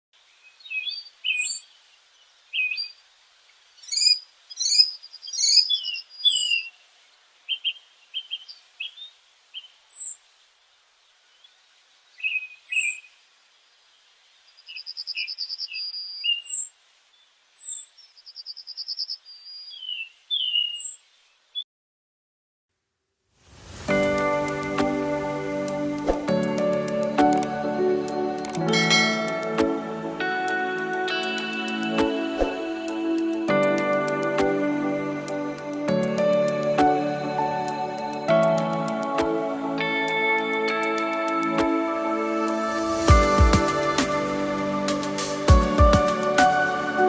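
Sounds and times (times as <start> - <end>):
bird chirping and trilling: 0.5 - 1.8, 3.8 - 6.8, 14.5 - 16.7, 17.6 - 21.6.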